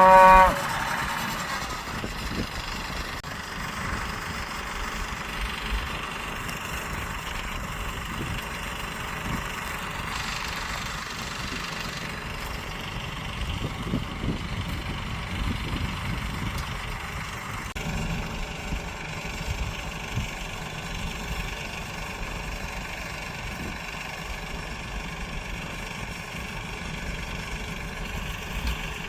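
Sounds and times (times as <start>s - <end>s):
tractor engine idling: 0.0s - 29.0s.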